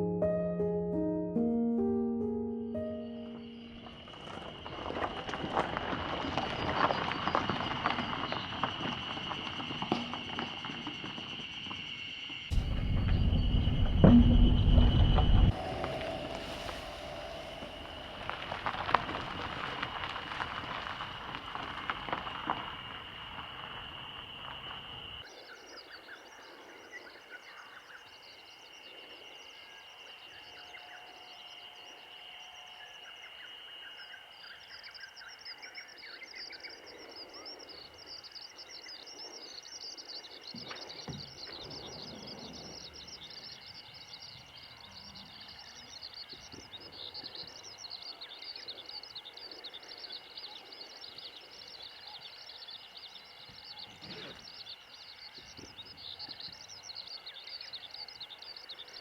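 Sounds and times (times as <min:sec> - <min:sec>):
steady high-pitched tone: 0:12.5 - 0:19.6
dull low knocks: 0:12.5 - 0:19.7
birds chirping: 0:12.5 - 0:22.2, 0:36.2 - 0:59.0.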